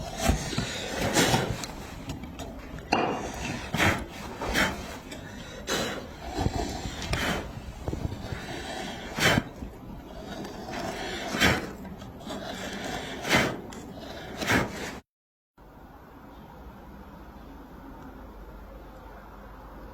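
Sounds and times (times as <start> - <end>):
carving tool striking wood: 0.0 - 7.5
scraping on wood: 0.0 - 15.0.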